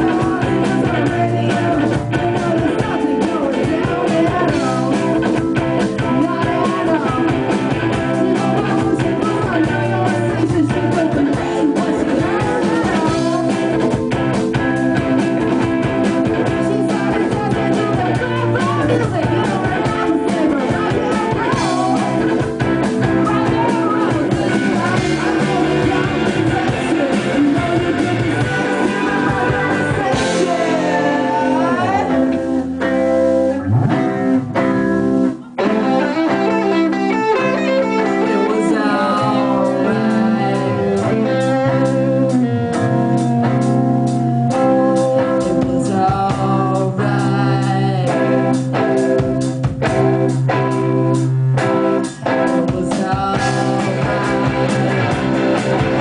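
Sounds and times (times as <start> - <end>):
live rock band with guitar: 0.0 - 56.0.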